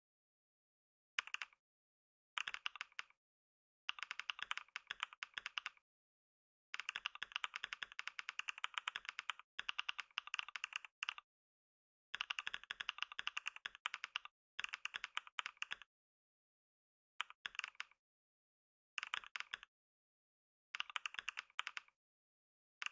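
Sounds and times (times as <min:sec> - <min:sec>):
fast typing on keyboard: 0:01.2 - 0:01.6, 0:02.4 - 0:03.2, 0:03.9 - 0:05.8, 0:06.8 - 0:11.2, 0:12.2 - 0:15.9, 0:17.2 - 0:18.0, 0:19.0 - 0:19.7, 0:20.8 - 0:22.0.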